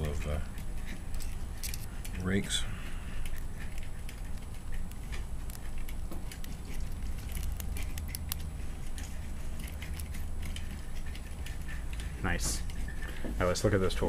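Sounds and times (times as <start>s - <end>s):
metallic lock picking clicks: 1.1s - 2.2s, 3.3s - 9.0s.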